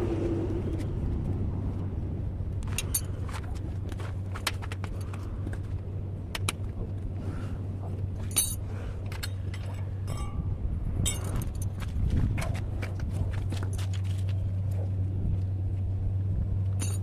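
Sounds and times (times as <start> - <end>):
steady low hum: 0.0 - 17.0
light metallic clinks: 8.3 - 10.4, 11.0 - 11.8, 16.8 - 17.0.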